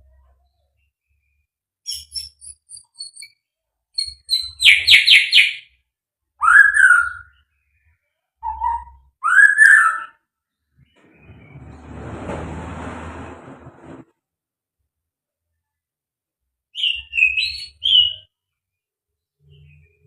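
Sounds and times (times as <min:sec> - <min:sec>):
songbird singing: 0:04.0 - 0:05.8.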